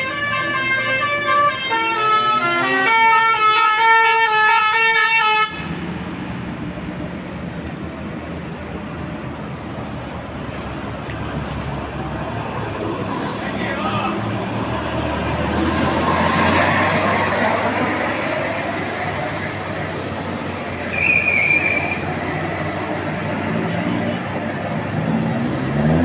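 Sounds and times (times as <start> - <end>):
multi-tone musical bus horn: 0.0 - 5.9, 20.8 - 22.2
engine rumble: 0.0 - 26.0
street noise: 0.0 - 26.0.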